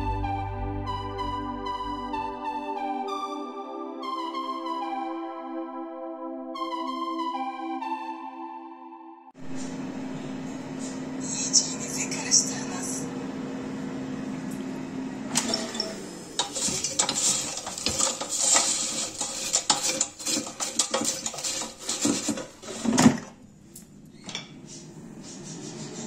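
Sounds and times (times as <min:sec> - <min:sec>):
appliance hum: 0:09.4 - 0:26.0
metal kitchenware clattering: 0:15.4 - 0:23.3.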